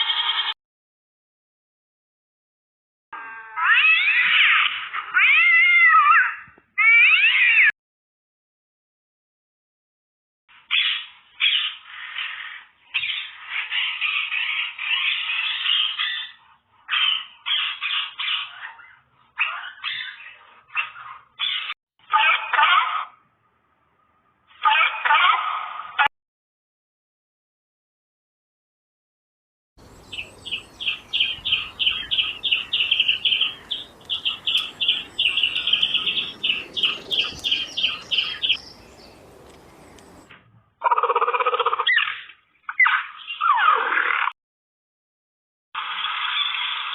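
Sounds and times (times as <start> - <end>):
animal calling harshly: 0.0 - 0.6, 3.2 - 7.7, 10.7 - 23.2, 24.5 - 26.1, 30.8 - 39.1, 40.1 - 44.3
bird chirping: 29.8 - 40.3
loud bird call: 29.8 - 42.2.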